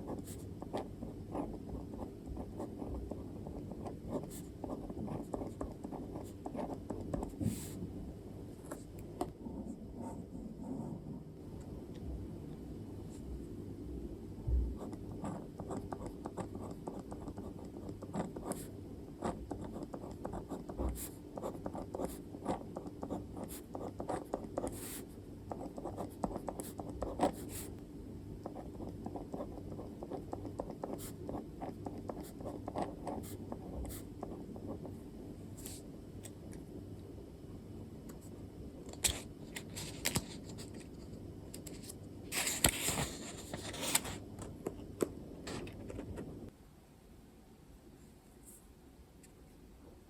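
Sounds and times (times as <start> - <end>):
pen scratching on paper: 0.0 - 7.8, 14.8 - 27.8, 28.4 - 34.9
faint low hum: 0.0 - 50.0.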